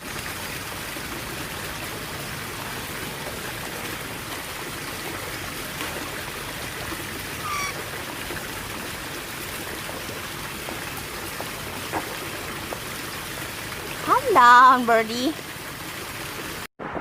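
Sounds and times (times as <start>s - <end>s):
water-like rushing noise: 0.0s - 17.0s
bird chirp: 7.4s - 7.8s.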